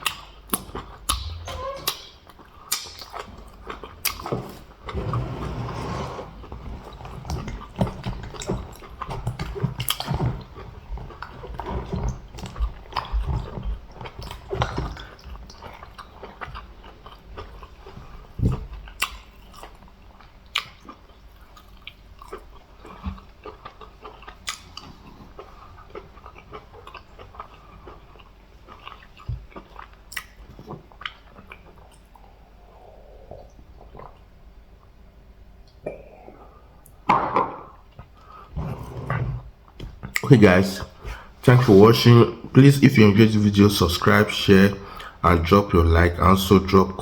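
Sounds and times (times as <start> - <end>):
wet chewing and mouth smacking: 0.0 - 4.9, 6.8 - 37.0, 39.6 - 41.4.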